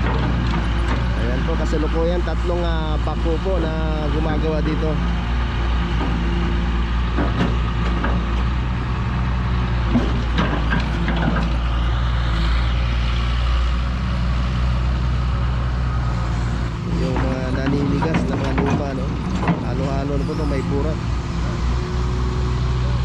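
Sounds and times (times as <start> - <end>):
short knocks and clanks: 0.0 - 1.2, 5.8 - 8.5, 9.8 - 11.6, 16.9 - 21.6
backhoe diesel engines running: 0.0 - 23.0.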